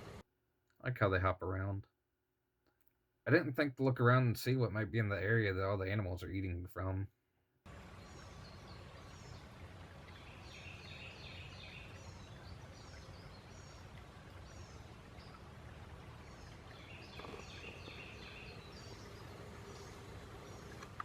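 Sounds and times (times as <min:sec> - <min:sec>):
small birds chirping: 0:07.7 - 0:21.0.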